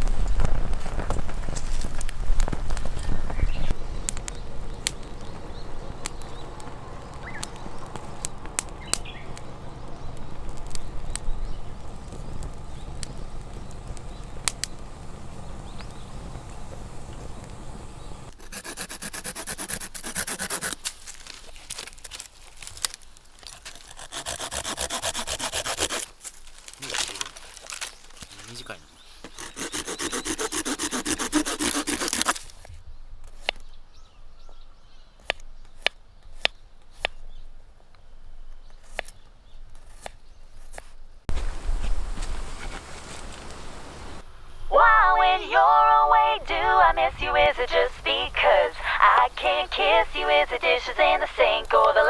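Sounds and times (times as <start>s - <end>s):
rubbing and scraping on wood: 29.2s - 32.5s
dense bright rustling: 41.3s - 44.2s.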